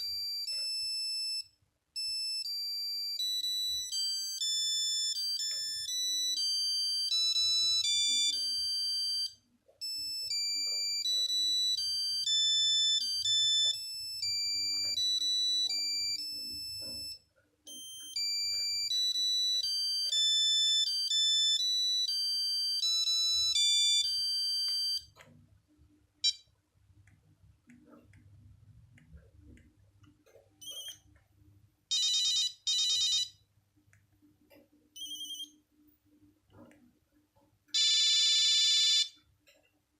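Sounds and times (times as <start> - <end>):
monophonic ringtone beeping melody: 0.0 - 25.1, 31.9 - 33.4, 35.0 - 35.5, 37.8 - 39.1.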